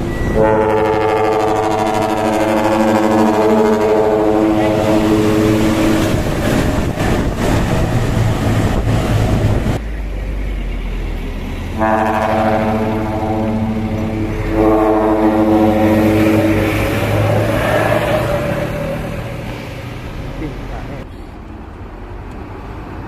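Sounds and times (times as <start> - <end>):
air horn blasts: 0.4 - 6.2, 11.8 - 19.2.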